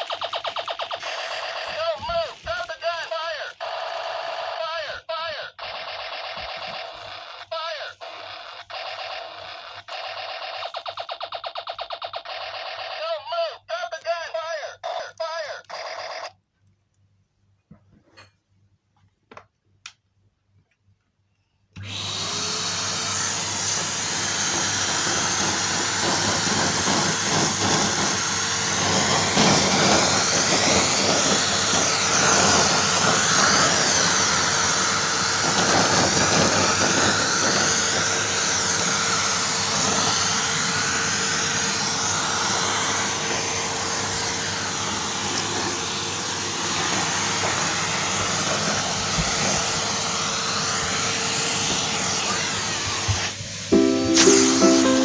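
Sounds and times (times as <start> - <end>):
vacuum cleaner running: 1.0 - 2.6, 21.8 - 55.0.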